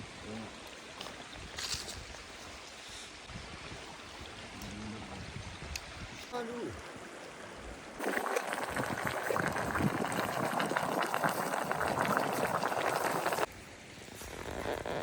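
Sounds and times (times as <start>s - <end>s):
water bubbling and gurgling: 7.8s - 13.5s.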